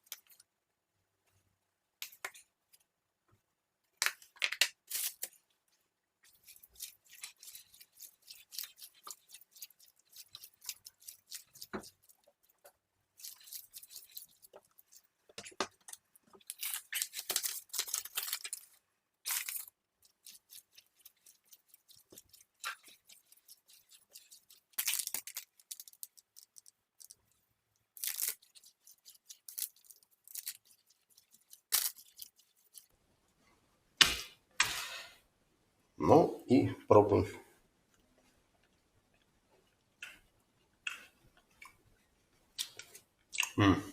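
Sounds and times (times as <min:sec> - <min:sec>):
fish mince being mixed in bowl: 0:06.2 - 0:27.3, 0:27.9 - 0:32.9.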